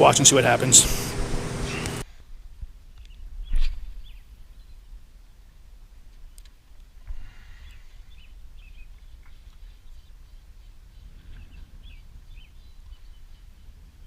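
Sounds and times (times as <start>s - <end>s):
bird chirps: 0.9s - 2.0s
wind rumble on microphone: 7.1s - 14.0s.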